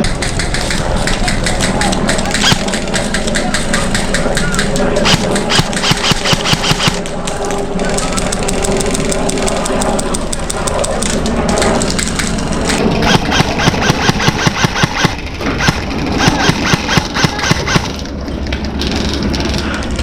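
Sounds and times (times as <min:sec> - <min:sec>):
airsoft guns firing: 0:00.0 - 0:07.4, 0:11.9 - 0:18.0.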